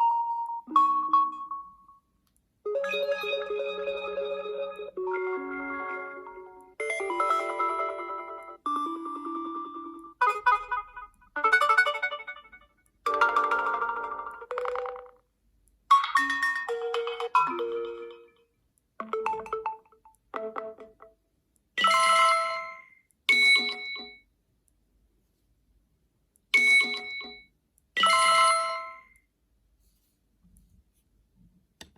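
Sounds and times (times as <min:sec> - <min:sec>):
electronic ringtone melody: 0:00.0 - 0:02.0, 0:02.7 - 0:15.2, 0:15.9 - 0:18.4, 0:19.0 - 0:21.2, 0:21.8 - 0:24.2, 0:26.6 - 0:27.4, 0:28.0 - 0:29.2.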